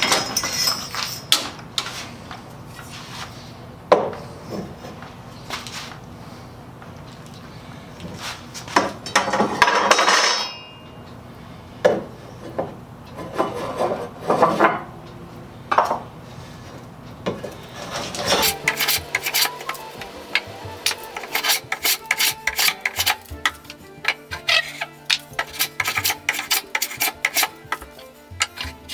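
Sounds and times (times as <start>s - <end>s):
hand tool shaving wood: 18.0s - 28.9s.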